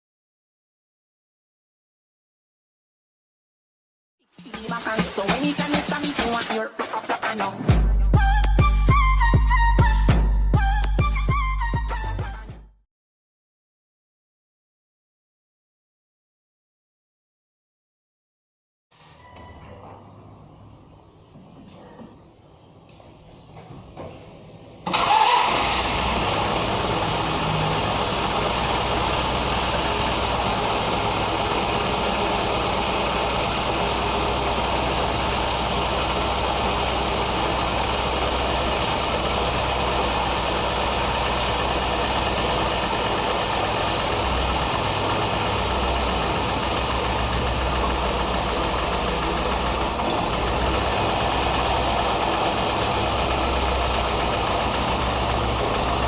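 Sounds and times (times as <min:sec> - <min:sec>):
car engine running: 0:24.9 - 0:56.0.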